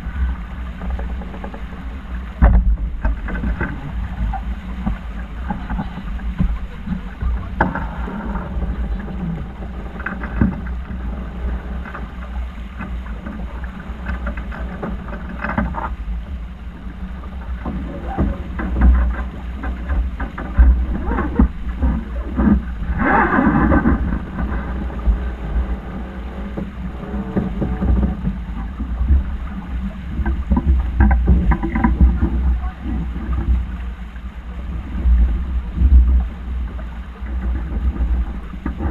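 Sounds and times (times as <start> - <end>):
water rushing along hull: 0.0 - 38.9
wind buffeting microphone: 0.0 - 38.9.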